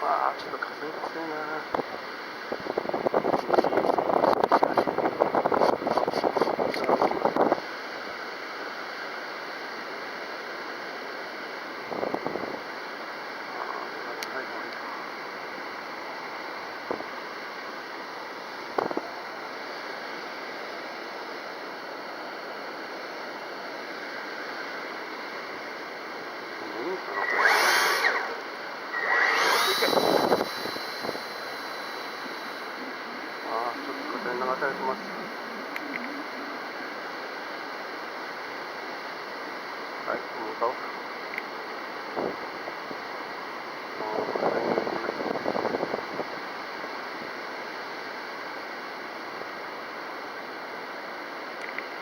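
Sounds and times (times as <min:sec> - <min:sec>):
steady rush of wind: 0:00.8 - 0:39.8, 0:42.0 - 0:47.6
wind noise on microphone: 0:02.5 - 0:07.6, 0:11.9 - 0:12.6, 0:29.7 - 0:31.4, 0:42.2 - 0:42.4, 0:44.1 - 0:46.4
electric motor whine: 0:24.2 - 0:38.5.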